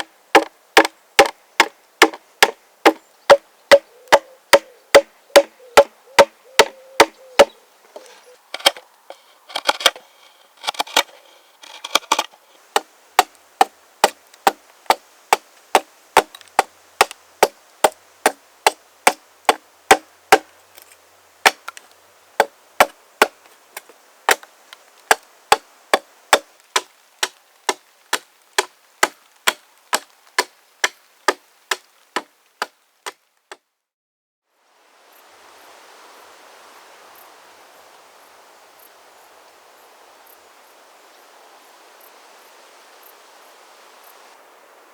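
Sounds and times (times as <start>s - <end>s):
axe striking wood: 0.0s - 7.5s, 8.6s - 14.6s, 17.0s - 20.5s, 21.4s - 21.8s, 24.3s - 24.5s, 25.1s - 33.6s
wood fibres splitting: 0.0s - 33.6s.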